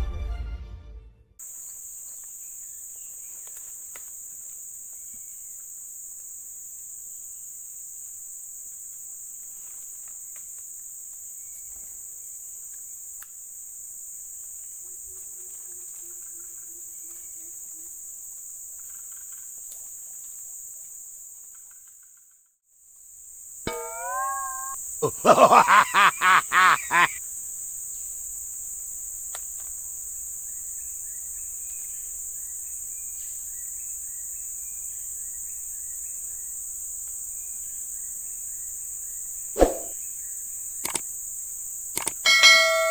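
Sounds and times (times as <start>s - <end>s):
insects droning: 1.4s - 42.9s
faint bird chirps: 23.7s - 24.8s.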